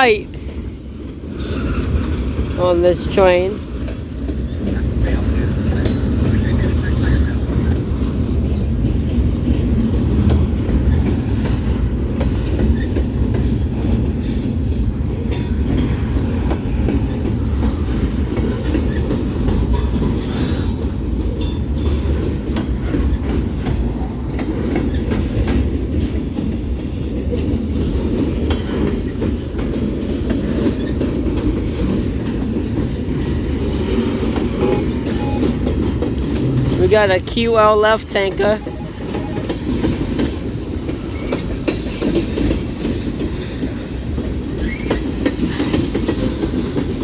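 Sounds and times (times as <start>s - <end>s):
freight train rumbling past: 0.0s - 47.0s
wheels clacking over rail joints: 3.6s - 47.0s
wheels squeaking: 33.7s - 36.9s.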